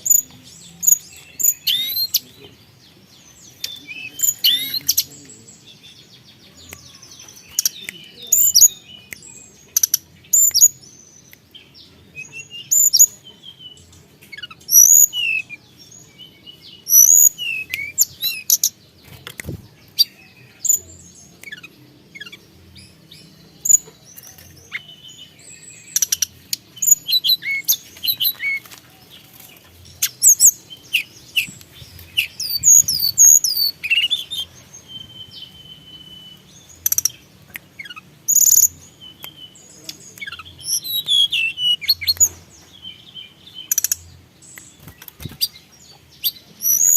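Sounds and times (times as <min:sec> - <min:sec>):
bird chirps and whistles: 0:32.2 - 0:37.0, 0:40.3 - 0:42.2.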